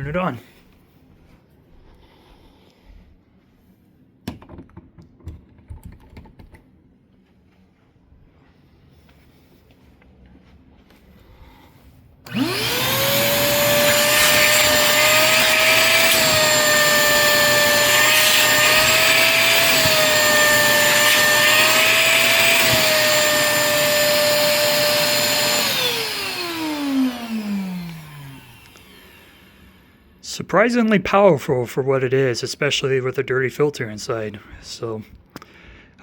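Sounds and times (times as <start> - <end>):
wet dry vacuum motor whining: 12.2 - 30.0
vacuum switch: 12.3 - 29.6.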